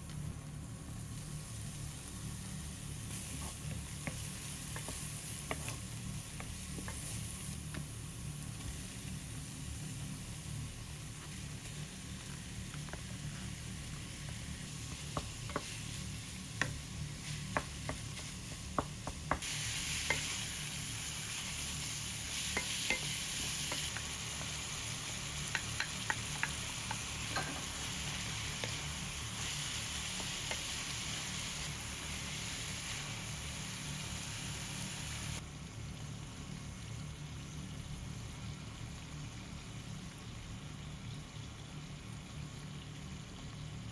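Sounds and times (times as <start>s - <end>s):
food sizzling in a frying pan: 0.0s - 43.9s
utensil tapping a pan: 15.1s - 15.7s, 16.6s - 16.8s, 17.4s - 19.4s, 25.4s - 27.6s.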